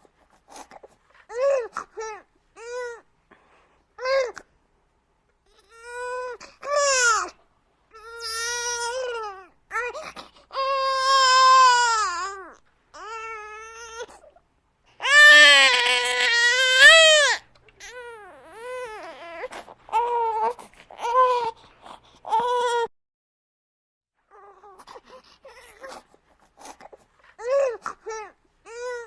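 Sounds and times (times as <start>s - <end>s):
infant crying: 5.5s - 14.3s, 15.0s - 21.6s, 22.2s - 22.9s, 24.3s - 26.1s, 26.7s - 29.0s.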